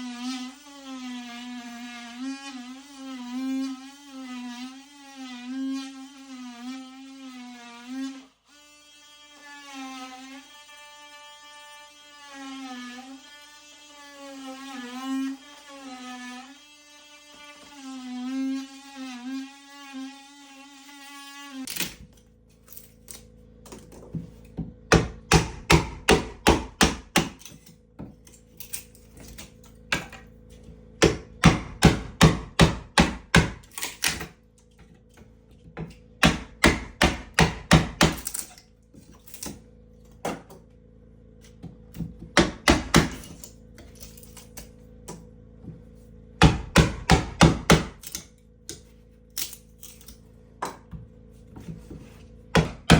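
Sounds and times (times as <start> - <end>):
hammer striking wood: 24.1 - 28.1, 31.0 - 34.3, 35.8 - 38.4, 41.6 - 43.3, 46.4 - 48.8, 52.5 - 52.9.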